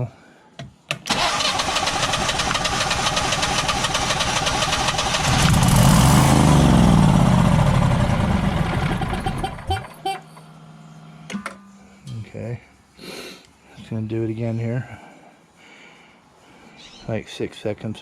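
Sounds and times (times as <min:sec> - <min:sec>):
generator engine cranking and running: 0:01.1 - 0:09.9.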